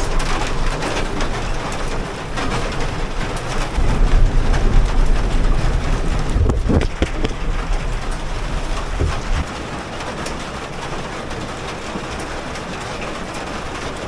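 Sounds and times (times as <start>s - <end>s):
heavy rain on metal vehicle: 0.0s - 14.0s
deep rumble: 2.3s - 10.2s.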